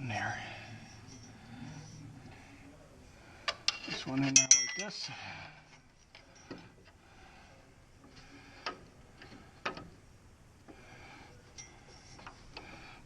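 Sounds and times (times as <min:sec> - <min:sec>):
faint handling noise: 0:03.4 - 0:13.0.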